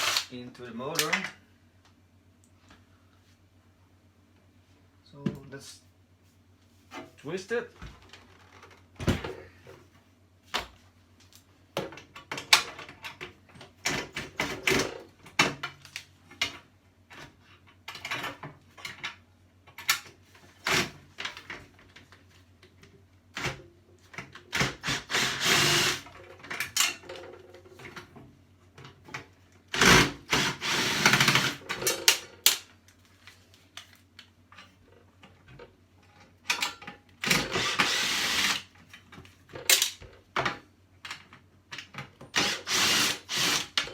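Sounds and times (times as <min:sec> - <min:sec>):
powered screwdriver whirring: 0:00.0 - 0:00.3, 0:24.7 - 0:26.0, 0:29.8 - 0:31.6, 0:37.3 - 0:38.7, 0:42.4 - 0:43.8
clatter of tools and parts: 0:25.6 - 0:30.0, 0:31.0 - 0:42.5.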